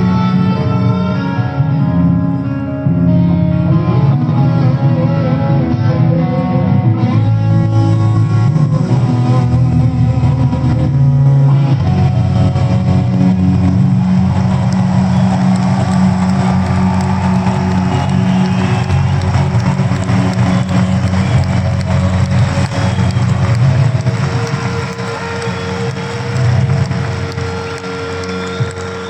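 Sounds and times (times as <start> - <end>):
live rock band with electric guitars: 0.0 - 29.0
crowd cheering in an arena: 11.8 - 29.0.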